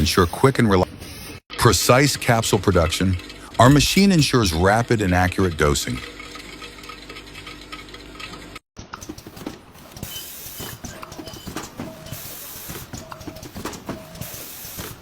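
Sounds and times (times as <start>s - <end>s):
machinery running: 3.4s - 4.8s, 9.0s - 15.0s
irregular clicks and knocks: 8.8s - 15.0s.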